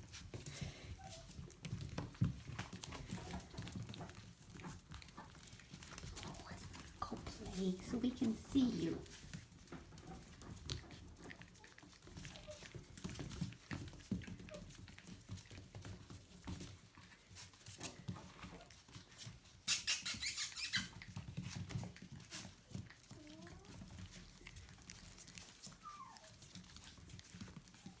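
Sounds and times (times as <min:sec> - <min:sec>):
puppies' paws scuffling: 0:00.0 - 0:28.0
puppy squeaks: 0:19.6 - 0:21.2, 0:25.6 - 0:26.5.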